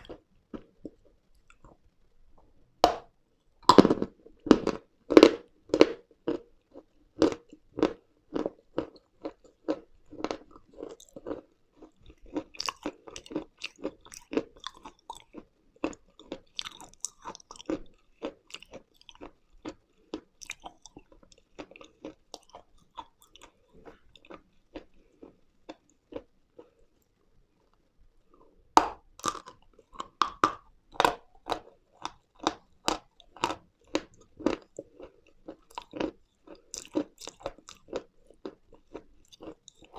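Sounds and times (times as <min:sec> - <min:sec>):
crunchy chewing: 0:03.6 - 0:27.0, 0:29.2 - 0:39.9.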